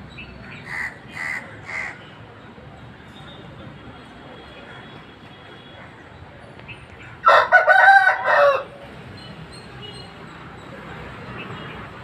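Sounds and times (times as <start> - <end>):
rooster crowing: 7.2 - 8.8.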